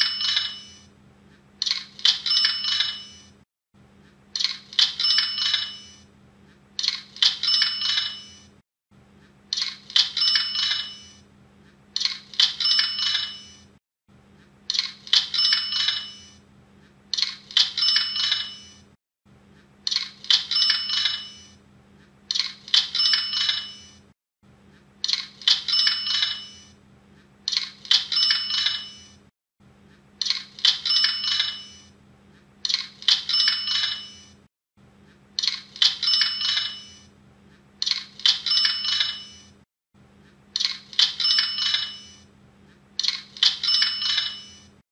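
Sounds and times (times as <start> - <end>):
bell ding: 0.0 - 0.8.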